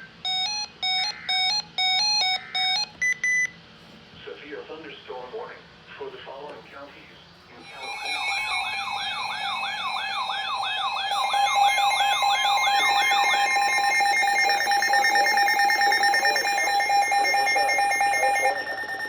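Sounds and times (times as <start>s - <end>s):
rapid electronic beeping: 7.6s - 19.0s
siren-like yelp: 7.6s - 19.0s
steady alert tone: 7.6s - 19.0s.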